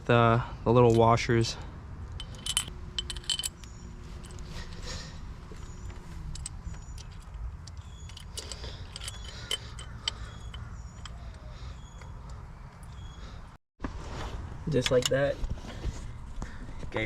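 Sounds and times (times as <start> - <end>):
metal bolts clinking: 2.1 - 4.9, 6.2 - 11.2.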